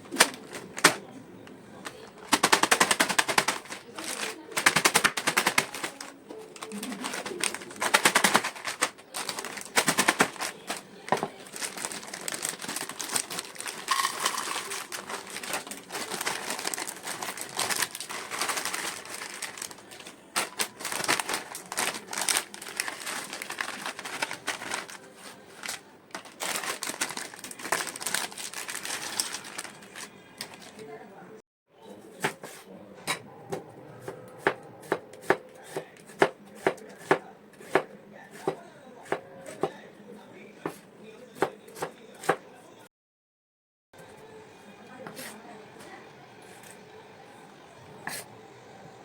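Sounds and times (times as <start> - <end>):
chip packets crinkling: 1.8 - 30.9
crisp chips crunching: 1.9 - 30.8.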